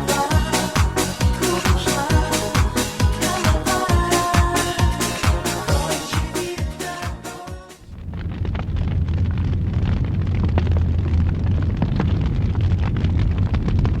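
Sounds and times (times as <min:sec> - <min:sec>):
dance music: 0:00.0 - 0:07.9
bonfire roaring and crackling: 0:08.0 - 0:14.0.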